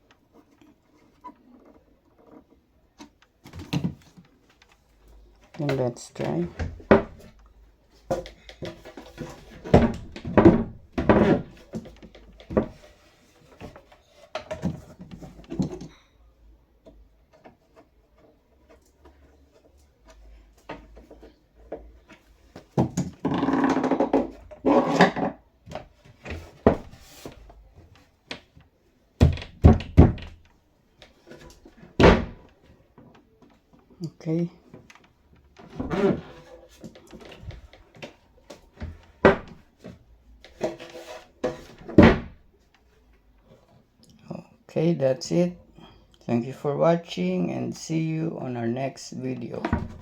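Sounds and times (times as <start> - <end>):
wooden cabinet door knocking shut: 29.2 - 30.4, 32.0 - 32.4, 39.2 - 39.6, 41.9 - 42.4.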